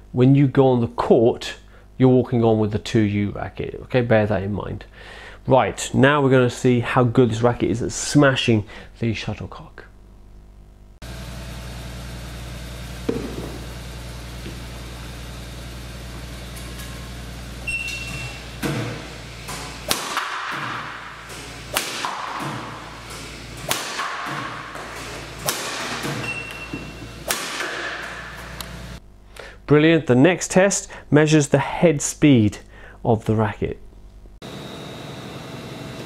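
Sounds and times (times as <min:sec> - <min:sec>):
steady low hum: 0:00.0 - 0:36.0
racket smashing shuttlecock: 0:13.0 - 0:14.6, 0:19.5 - 0:23.0, 0:23.6 - 0:26.2, 0:27.2 - 0:28.8
short high beep: 0:17.7 - 0:18.4.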